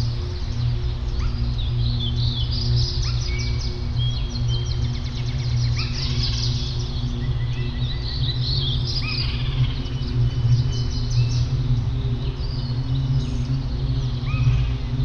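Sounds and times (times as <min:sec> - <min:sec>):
songbirds chirping and trilling: 0:00.0 - 0:15.0
steady low hum: 0:00.0 - 0:15.0.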